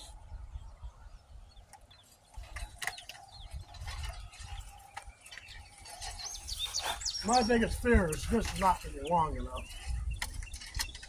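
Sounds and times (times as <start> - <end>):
small birds chirping: 0.0 - 11.0
tools clicking and knocking: 9.8 - 11.0.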